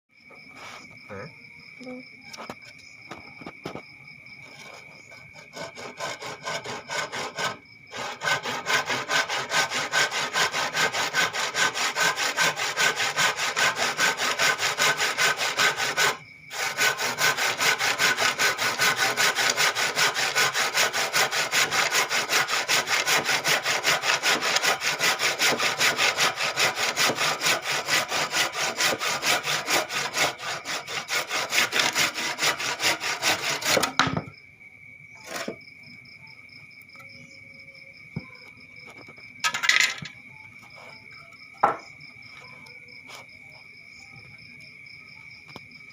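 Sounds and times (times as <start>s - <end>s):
hand saw cutting wood: 4.4s - 34.2s, 35.2s - 35.6s, 39.4s - 40.1s.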